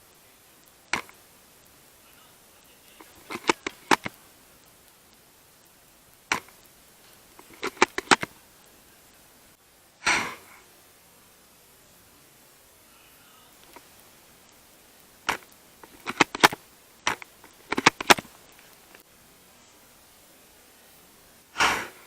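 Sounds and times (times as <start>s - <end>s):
airsoft rifle firing: 10.0s - 10.6s, 21.6s - 22.0s.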